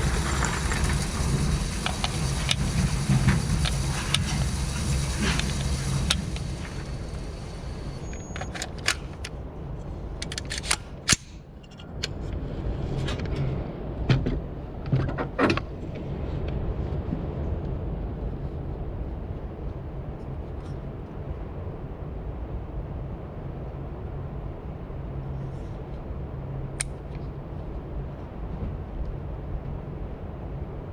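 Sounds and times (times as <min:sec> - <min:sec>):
sharp clicks and knocks: 0:00.0 - 0:09.3
steady low rumble: 0:00.0 - 0:30.9.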